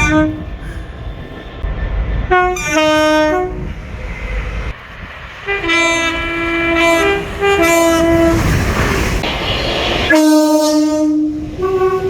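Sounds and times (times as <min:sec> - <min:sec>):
two-tone train horn: 0:00.0 - 0:00.4, 0:02.3 - 0:03.6, 0:05.5 - 0:08.4, 0:10.1 - 0:12.0
low train rumble: 0:00.0 - 0:12.0.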